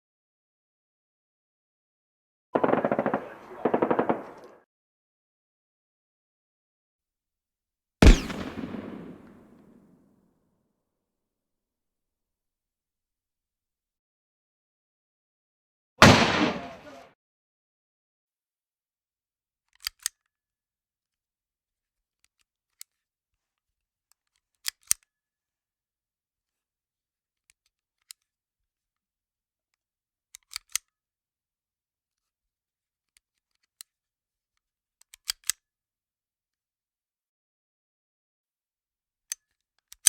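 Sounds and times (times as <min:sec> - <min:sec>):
gunshot: 0:08.0 - 0:09.8, 0:16.0 - 0:17.1
gun action metallic clicks: 0:19.7 - 0:20.2, 0:35.1 - 0:35.6.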